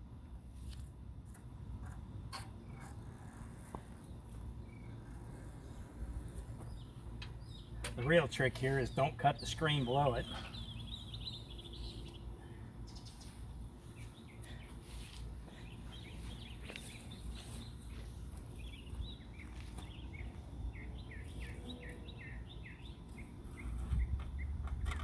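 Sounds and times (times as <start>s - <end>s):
bird chirping: 6.6s - 25.0s.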